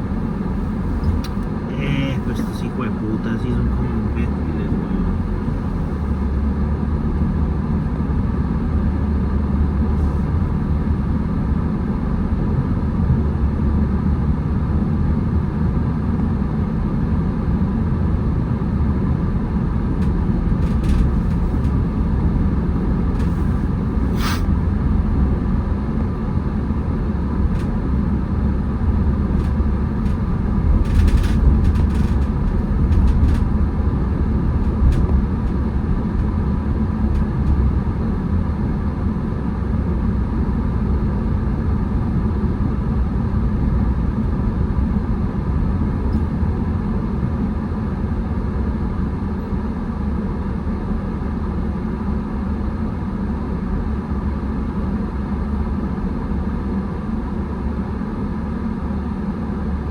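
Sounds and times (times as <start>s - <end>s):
car engine and tyre rumble: 0.0s - 59.9s.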